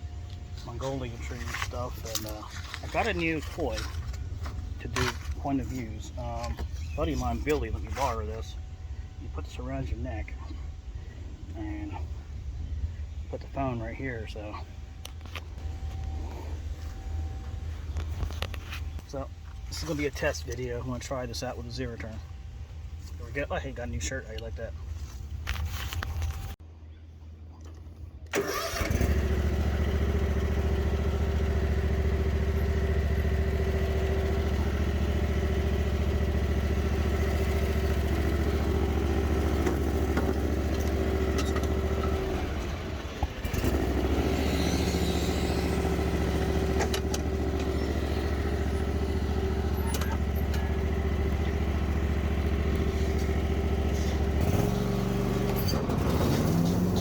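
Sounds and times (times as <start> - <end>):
mower engine running: 0.3 - 10.0, 28.3 - 57.0.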